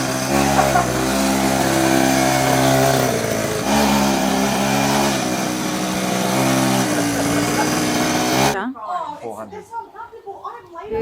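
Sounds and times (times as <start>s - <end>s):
small bike engine revving: 0.0s - 8.6s.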